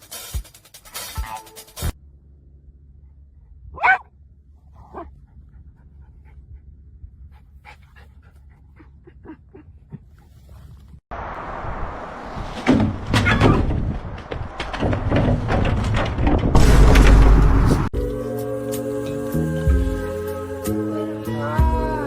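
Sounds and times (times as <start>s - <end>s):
dog panting: 5.0s - 9.1s
rushing noise: 11.1s - 17.9s.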